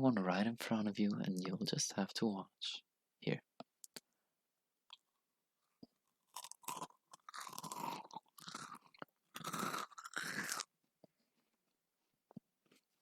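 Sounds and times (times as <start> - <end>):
cookie crunching: 5.9 - 10.8.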